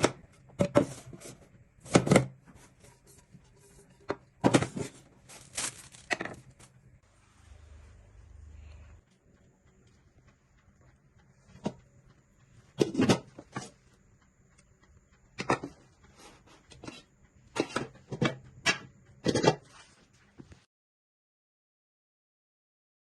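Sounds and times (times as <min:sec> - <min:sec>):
pots and pans clattering: 0:03.6 - 0:05.0, 0:12.8 - 0:13.7, 0:17.6 - 0:19.7.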